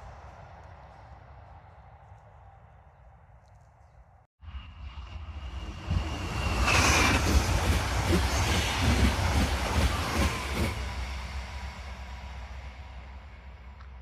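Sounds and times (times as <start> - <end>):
train wheels rumbling on rail: 4.5 - 14.0
high wheel squeal: 5.3 - 11.6.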